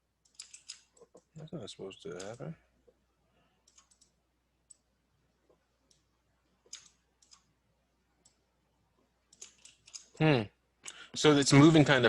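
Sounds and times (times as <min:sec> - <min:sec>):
mouse and keyboard clicks: 0:00.2 - 0:01.3, 0:03.6 - 0:04.9, 0:05.8 - 0:07.5, 0:09.3 - 0:10.2.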